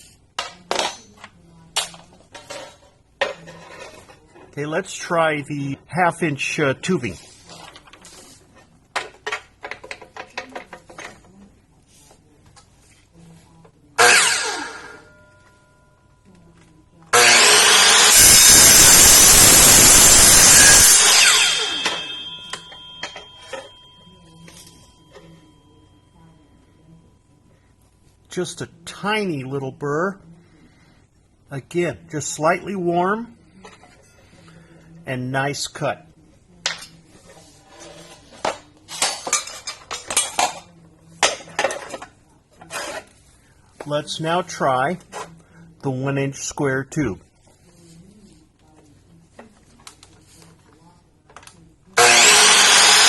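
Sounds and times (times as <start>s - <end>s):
miter saw cutting metal tubing: 14.0s - 15.0s, 17.1s - 22.7s, 52.0s - 53.0s
saw motor winding down whine: 14.0s - 15.0s, 17.2s - 22.3s, 52.0s - 53.0s.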